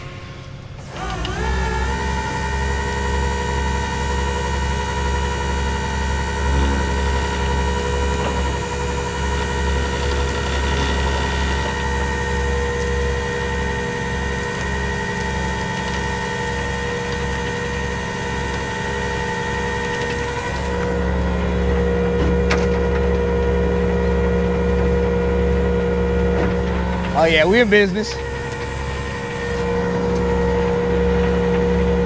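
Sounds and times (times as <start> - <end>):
truck engine running: 26.2 - 32.0.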